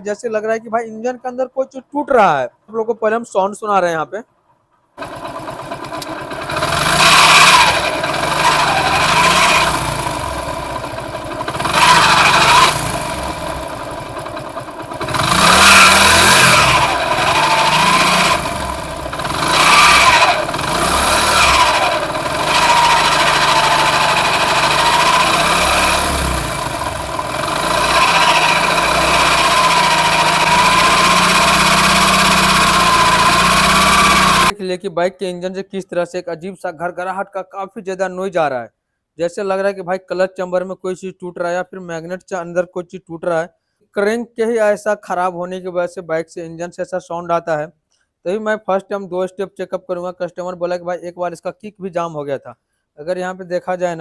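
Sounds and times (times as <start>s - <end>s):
grinding growl from engine: 5.0s - 34.5s
motorcycle engine revving: 5.0s - 34.5s.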